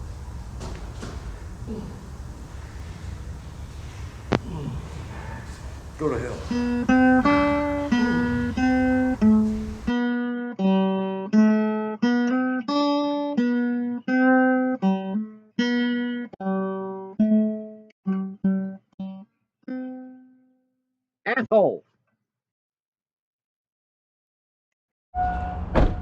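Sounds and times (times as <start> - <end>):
guitar plucked melody: 6.0 - 20.4.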